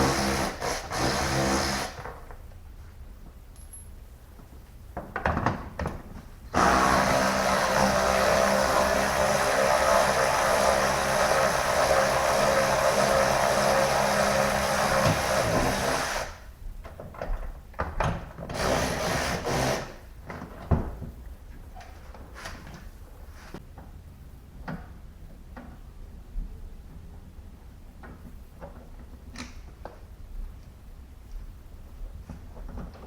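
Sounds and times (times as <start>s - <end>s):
power drill running: 0.0s - 2.0s, 6.6s - 16.4s, 18.5s - 20.0s.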